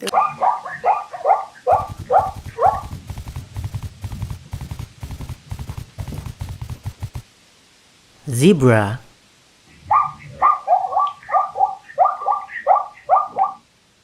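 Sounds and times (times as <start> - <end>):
dog yelps: 0.0 - 2.8, 9.9 - 13.6
fast rattling clatter: 1.7 - 7.2.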